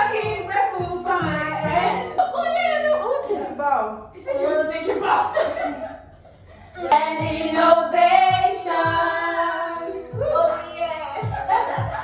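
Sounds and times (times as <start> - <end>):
thumping kick drum beat: 0.0 - 2.2, 7.1 - 7.6, 8.2 - 12.0
song with held sung notes: 6.9 - 12.0.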